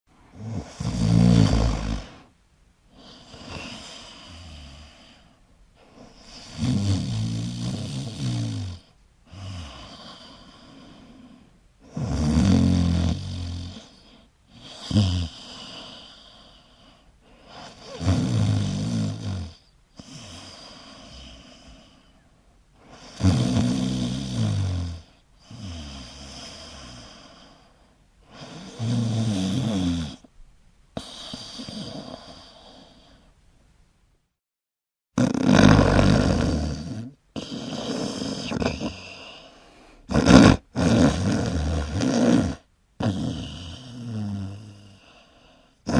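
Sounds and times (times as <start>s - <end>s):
person snoring: 0.3s - 2.3s, 3.0s - 5.3s, 6.0s - 16.8s, 17.4s - 22.1s, 22.8s - 27.7s, 28.3s - 30.3s, 31.0s - 33.2s, 35.2s - 45.9s
short snort: 0.4s - 2.3s, 31.0s - 33.2s, 35.2s - 45.0s
soft breathing: 9.2s - 11.6s, 15.4s - 18.0s, 31.0s - 33.4s, 37.6s - 40.1s, 44.6s - 45.8s.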